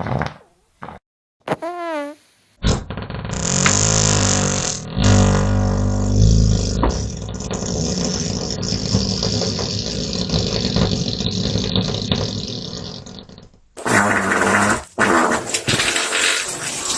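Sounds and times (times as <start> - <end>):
long low fart: 0.0 - 14.8.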